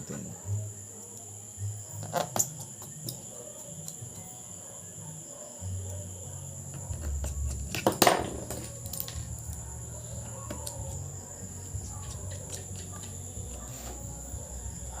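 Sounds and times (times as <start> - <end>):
steady high whine: 3.7 - 15.0
laptop parts clicking and knocking: 6.7 - 9.4.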